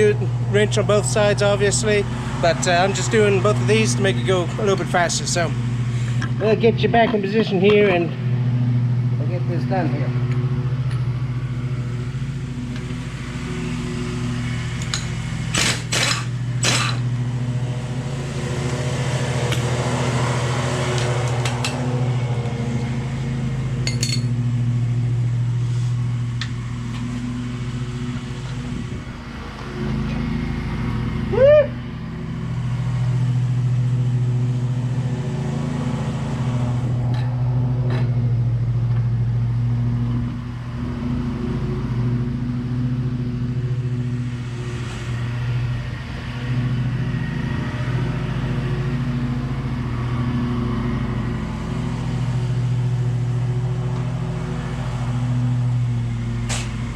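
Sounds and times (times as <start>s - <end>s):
low mechanical hum: 0.0s - 56.9s
power tool whine: 0.0s - 56.9s.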